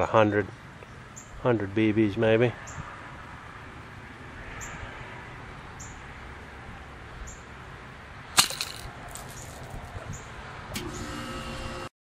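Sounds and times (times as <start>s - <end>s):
rat trap snapping shut: 8.4s - 9.8s
small clicks of scattering pellets: 8.4s - 9.9s.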